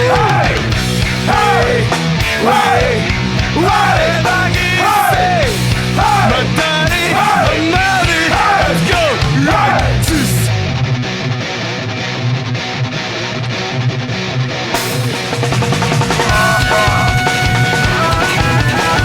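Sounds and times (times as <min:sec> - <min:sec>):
person singing: 0:00.0 - 0:00.7, 0:01.3 - 0:10.5, 0:16.3 - 0:19.0
loud rock band: 0:00.0 - 0:19.0.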